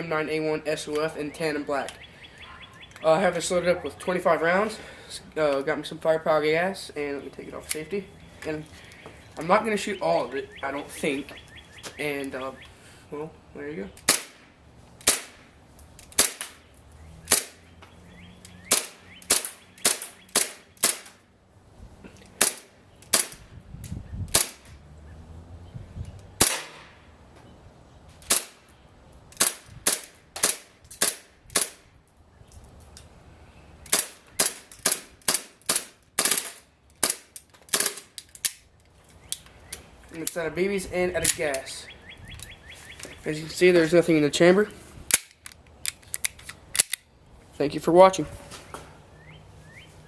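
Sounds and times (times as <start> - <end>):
airsoft pistol shots: 14.1 - 14.4, 15.0 - 15.5, 18.7 - 21.2, 26.4 - 27.0.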